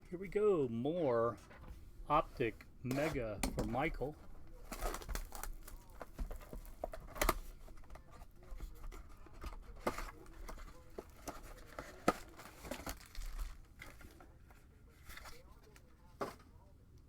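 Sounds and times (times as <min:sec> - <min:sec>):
wrapper and cardboard crinkling: 0:02.4 - 0:16.4
wrapper tearing: 0:04.5 - 0:07.4, 0:10.1 - 0:14.2.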